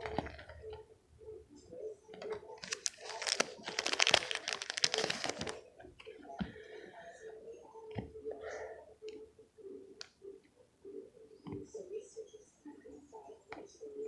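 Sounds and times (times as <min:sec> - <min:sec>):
packaging crinkling: 0:02.6 - 0:05.6.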